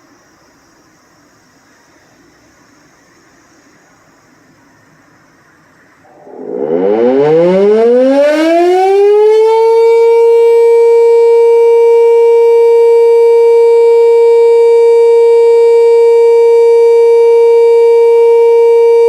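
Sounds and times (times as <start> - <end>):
electric motor siren: 6.1 - 19.0.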